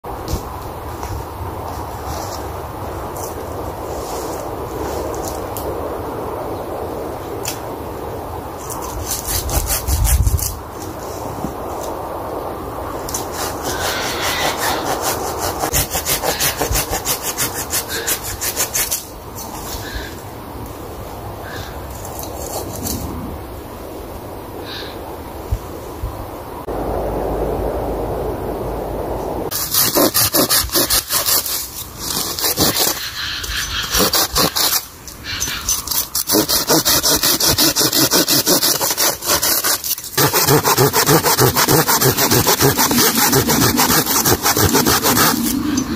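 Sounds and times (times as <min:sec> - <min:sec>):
hand saw cutting wood: 0:08.6 - 0:10.5, 0:13.3 - 0:19.1, 0:29.5 - 0:45.5.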